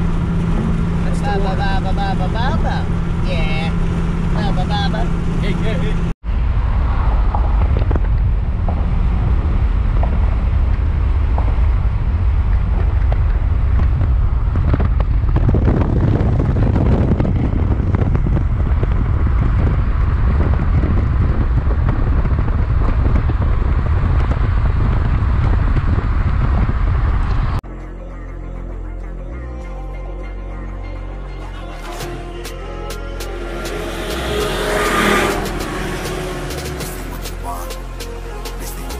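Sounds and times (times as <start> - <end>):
vehicle rumble: 0.0 - 38.9
wind buffeting microphone: 6.2 - 27.6.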